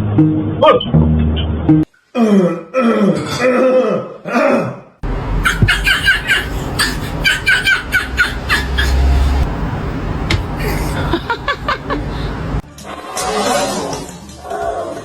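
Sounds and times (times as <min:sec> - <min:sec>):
person laughing: 0:05.4 - 0:09.5, 0:10.4 - 0:12.4.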